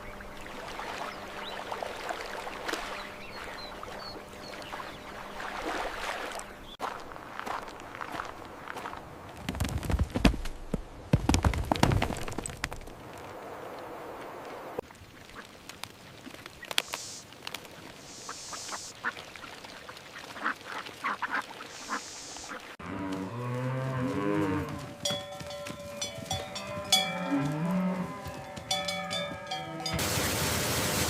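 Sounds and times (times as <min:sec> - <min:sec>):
cattle mooing: 0:22.8 - 0:25.2, 0:25.8 - 0:30.0
cowbells ringing: 0:24.7 - 0:30.0.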